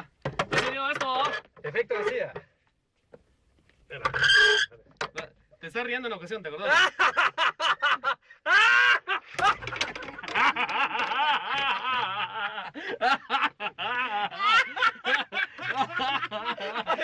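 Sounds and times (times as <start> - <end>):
people laughing: 6.6 - 17.0.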